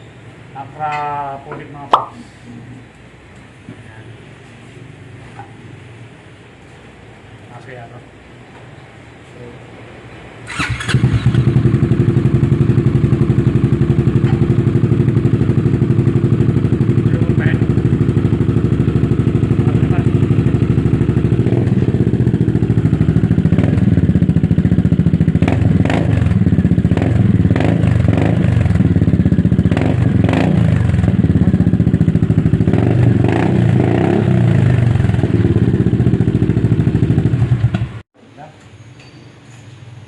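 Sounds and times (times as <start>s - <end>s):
scooter engine idling and revving: 10.4s - 38.1s.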